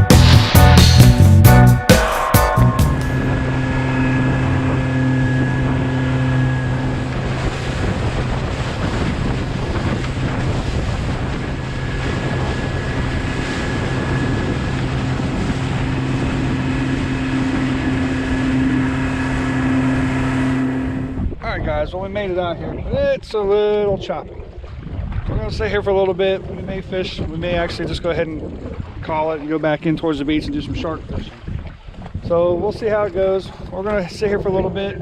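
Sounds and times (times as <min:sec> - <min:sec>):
motorboat engine drone: 0:00.0 - 0:21.4
water rushing along hull: 0:01.8 - 0:35.0
wind buffeting microphone: 0:02.7 - 0:35.0.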